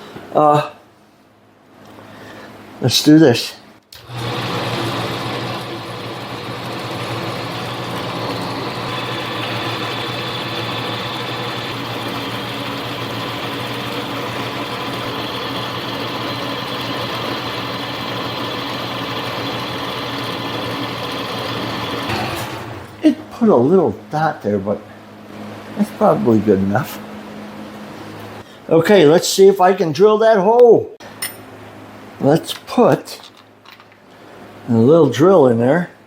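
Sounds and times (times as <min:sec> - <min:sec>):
lathe motor hum with faint whine: 0:04.0 - 0:22.9.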